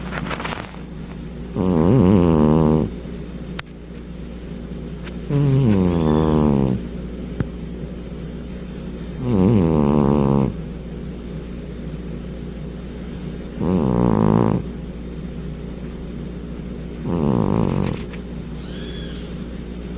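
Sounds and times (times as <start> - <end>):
steady low hum: 0.0 - 19.9
cat snoring: 1.5 - 2.9, 5.3 - 6.8, 9.2 - 10.6, 13.6 - 14.7, 17.0 - 18.1.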